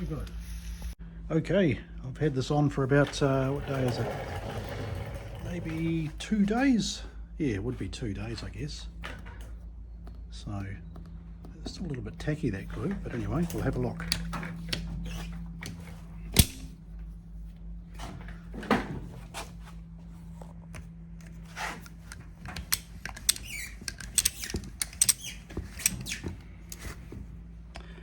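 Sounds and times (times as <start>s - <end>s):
steady low hum: 0.0s - 28.0s
clicks and squeaky rubbing: 8.9s - 16.8s, 20.6s - 27.5s.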